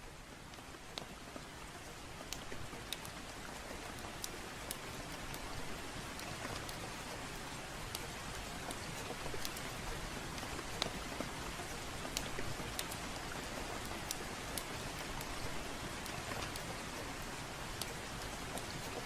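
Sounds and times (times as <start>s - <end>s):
steady rain falling: 0.0s - 19.0s
wood fire crackling: 7.9s - 17.0s.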